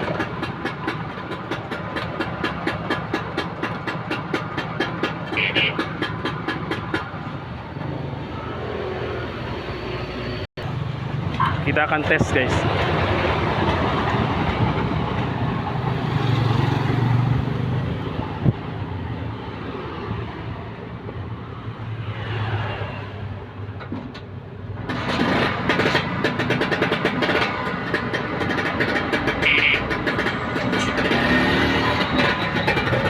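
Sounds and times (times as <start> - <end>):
rapid clicks and rattling: 0.0 - 7.2, 24.8 - 33.0
two-stroke scooter engine running: 0.0 - 7.3, 24.9 - 33.0.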